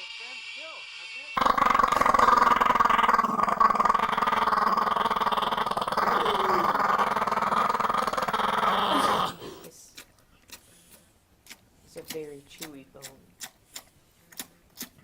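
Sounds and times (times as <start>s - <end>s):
dog growling: 1.4s - 9.6s.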